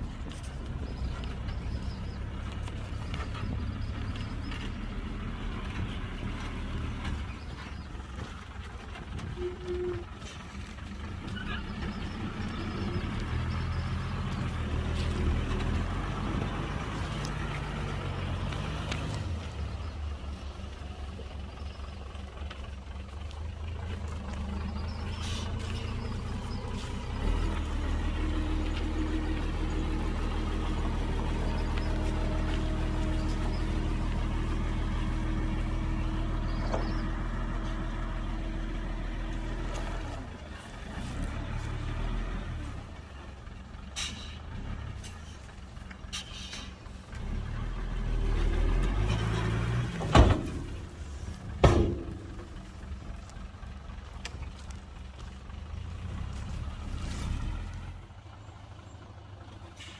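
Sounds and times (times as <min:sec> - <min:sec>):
heavy diesel engines running: 0:00.0 - 0:59.9
loud steady engine: 0:00.0 - 0:59.9
engine revving: 0:09.1 - 0:21.4, 0:23.1 - 0:45.5, 0:46.1 - 0:58.8.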